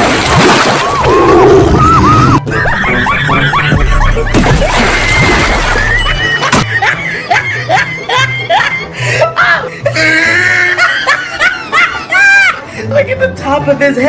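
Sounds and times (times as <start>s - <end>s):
music with warbling melody: 1.8s - 9.3s.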